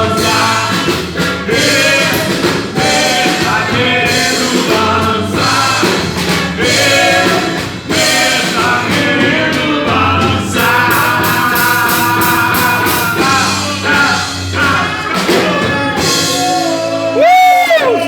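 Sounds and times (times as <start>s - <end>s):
live band playing: 0.0s - 18.0s
person singing: 0.0s - 18.0s
steady drum beat: 0.0s - 18.0s.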